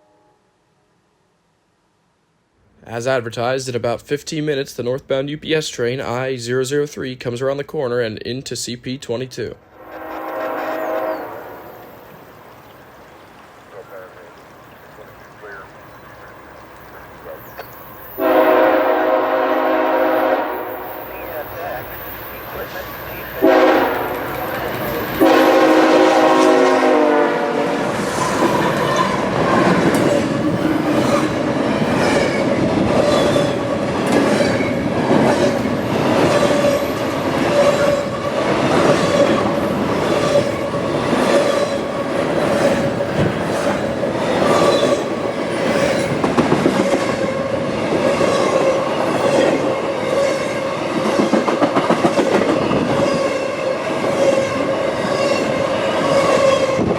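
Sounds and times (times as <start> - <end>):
locomotive horn blasts: 9.8 - 11.8, 18.2 - 21.3, 23.4 - 27.8
train rumble: 9.8 - 56.9
train wheels clicking over rail joints: 21.5 - 25.3, 28.0 - 53.3.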